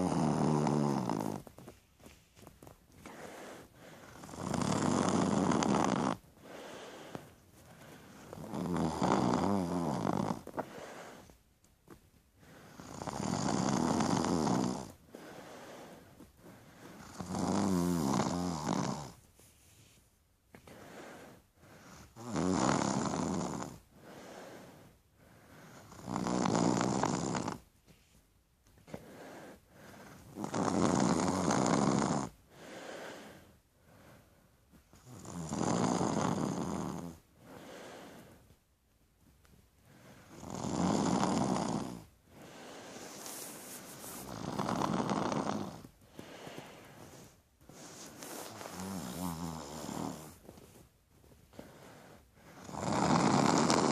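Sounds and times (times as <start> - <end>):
person snoring: 0.0 - 1.5, 3.0 - 7.3, 8.0 - 11.3, 12.6 - 16.1, 16.8 - 19.2, 20.7 - 24.8, 25.7 - 27.6, 30.1 - 33.5, 35.0 - 38.3, 40.2 - 50.4, 51.6 - 53.9
quiet breath: 0.0 - 26.1, 26.8 - 53.9.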